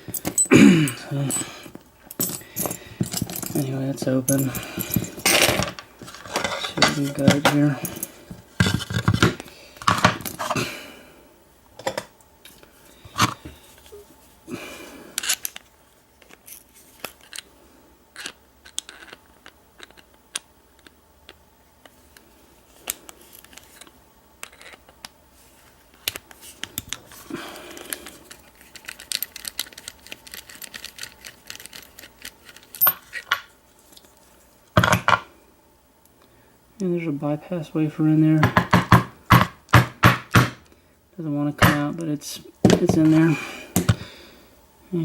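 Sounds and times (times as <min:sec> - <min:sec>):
small metal clicks and scrapes: 0:27.8 - 0:34.2.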